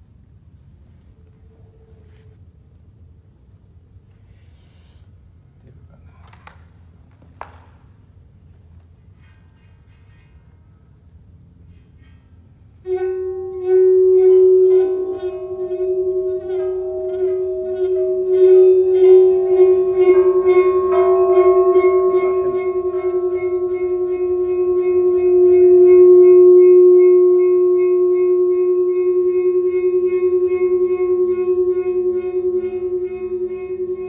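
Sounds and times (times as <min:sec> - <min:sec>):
ringing tone with waver: 0:12.8 - 0:34.0.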